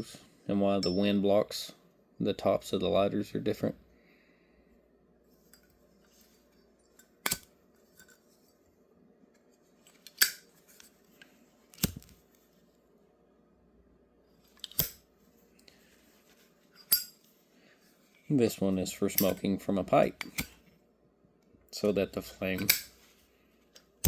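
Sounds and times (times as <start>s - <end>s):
faint steady hum: 0.0s - 24.0s
lighter lids clacking: 7.2s - 7.5s, 10.1s - 10.5s, 14.6s - 15.0s, 22.6s - 23.0s.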